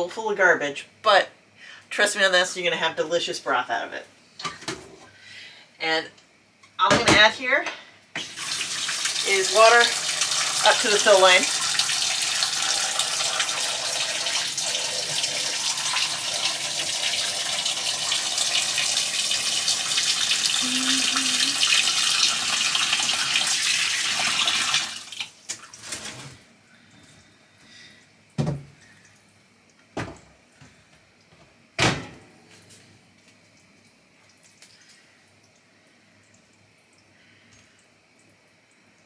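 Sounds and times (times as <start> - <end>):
tap water rushing into pot: 8.2 - 20.6, 21.6 - 26.2.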